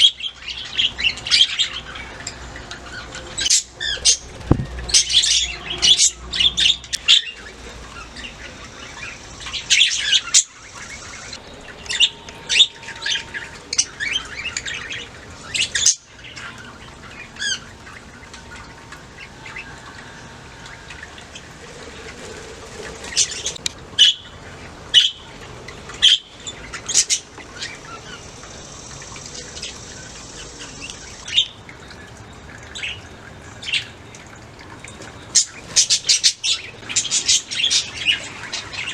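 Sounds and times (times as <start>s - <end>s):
budgerigars chirping and chattering: 0.0s - 18.7s, 24.9s - 31.6s.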